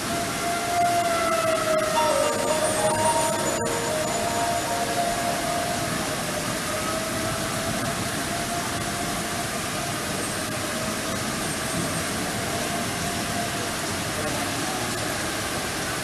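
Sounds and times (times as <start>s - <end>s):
distant warning siren: 0.0s - 9.3s.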